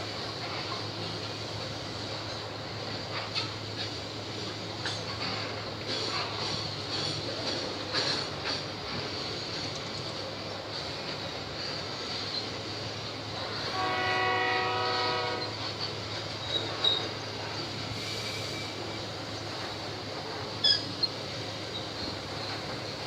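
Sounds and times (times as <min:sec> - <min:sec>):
train rumbling on rails: 0:00.0 - 0:23.0
train air horn blast: 0:13.5 - 0:15.7.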